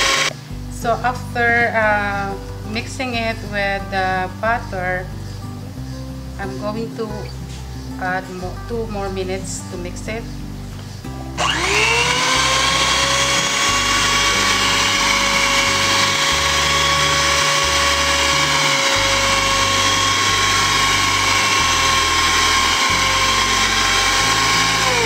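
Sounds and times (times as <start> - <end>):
electric mixer motor whining: 0.0 - 0.3, 11.4 - 25.0.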